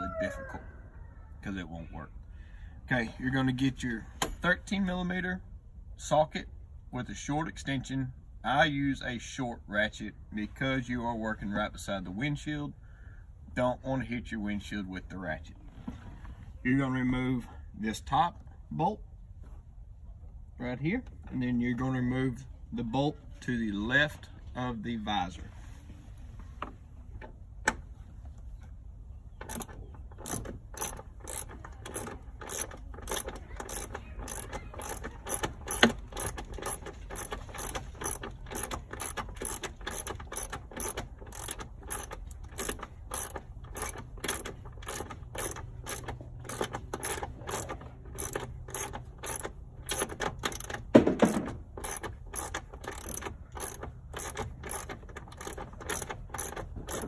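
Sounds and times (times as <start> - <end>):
hand ratchet clicking rapidly: 29.4 - 57.0
loud clunk: 50.9 - 51.6.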